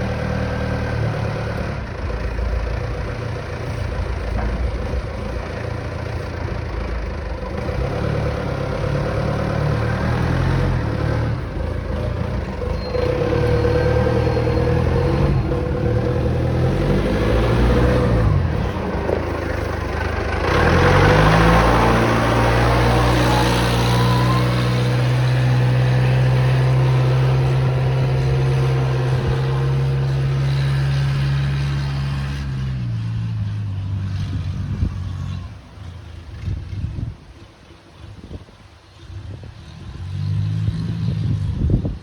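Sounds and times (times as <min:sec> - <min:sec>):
wheel loader engine revving: 0:00.0 - 0:42.0.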